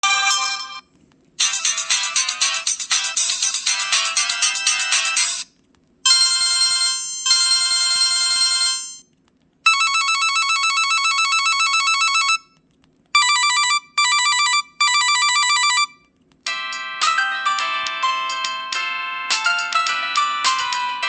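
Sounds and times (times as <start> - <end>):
electronic phone ringtones: 0.0 - 0.9, 6.1 - 9.1, 9.7 - 12.6, 13.2 - 16.0.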